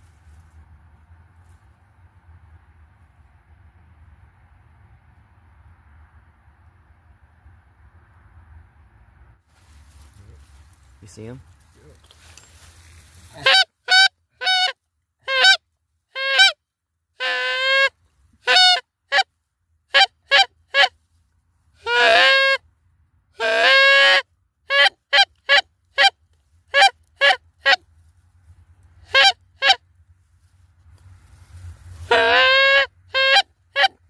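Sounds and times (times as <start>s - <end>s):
geese honking: 13.3s - 15.6s, 17.2s - 19.2s, 21.8s - 22.6s, 23.4s - 27.8s, 29.1s - 29.8s, 32.0s - 34.0s.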